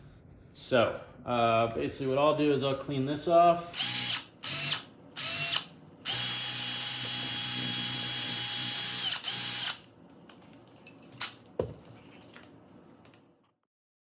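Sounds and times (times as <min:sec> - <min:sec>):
power tool motor whining: 0:03.8 - 0:09.9.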